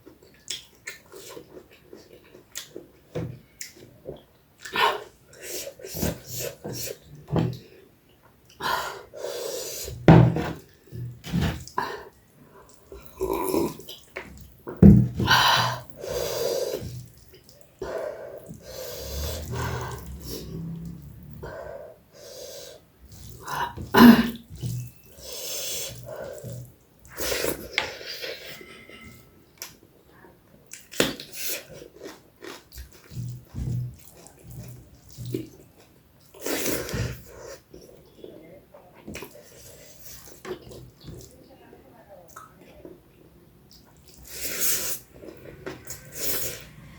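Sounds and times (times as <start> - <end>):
wet chewing and slurping: 15.6 - 21.4, 23.0 - 28.4, 30.7 - 38.0, 42.4 - 46.9.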